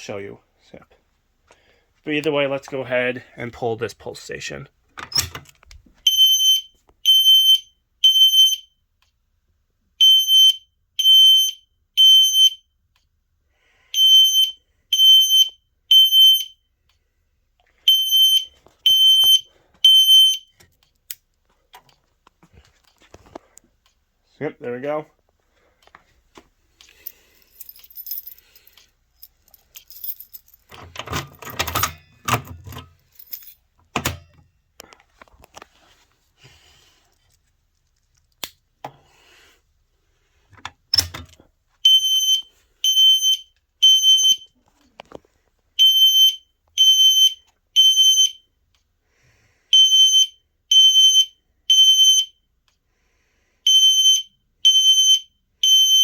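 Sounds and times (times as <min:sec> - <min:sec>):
fire alarm horn beeps: 0:06.0 - 0:08.8, 0:10.0 - 0:12.7, 0:13.9 - 0:16.6, 0:17.9 - 0:20.5, 0:41.8 - 0:44.6, 0:45.8 - 0:48.5, 0:49.7 - 0:52.4, 0:53.6 - 0:56.0.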